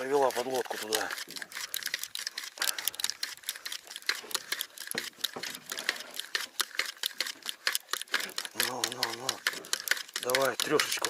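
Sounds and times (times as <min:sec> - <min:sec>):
rapid mechanical clicking: 0:00.0 - 0:11.0.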